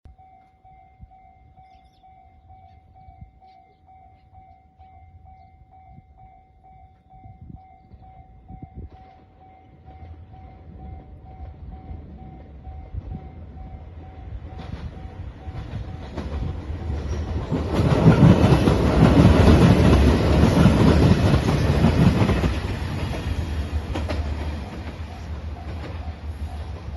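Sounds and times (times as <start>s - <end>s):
level crossing alarm ringing: 0.1s - 17.4s, 24.0s - 26.9s
diesel train rumble: 0.1s - 26.9s.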